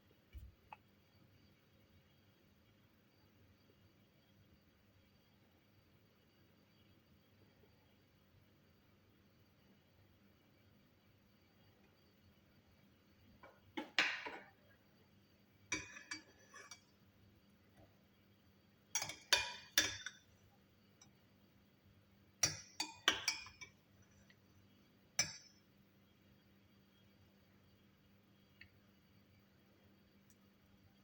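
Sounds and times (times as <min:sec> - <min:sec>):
glassware and utensils clinking: 0:19.0 - 0:20.2.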